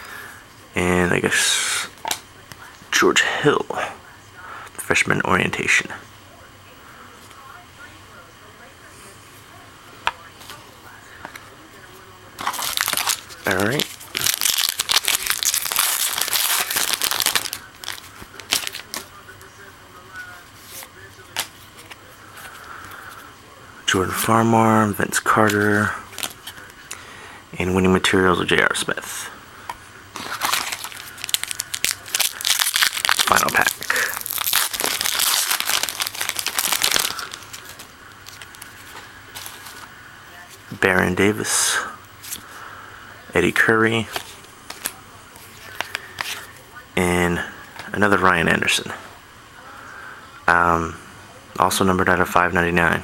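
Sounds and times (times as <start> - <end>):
cards rustling and clicking: 11.2 - 11.5, 12.4 - 19.1, 20.5 - 23.3, 25.3 - 26.9, 29.7 - 39.9, 44.0 - 46.6
foil wrapper crinkling and tearing: 12.4 - 19.1, 25.5 - 26.7, 30.1 - 39.9, 44.1 - 46.5.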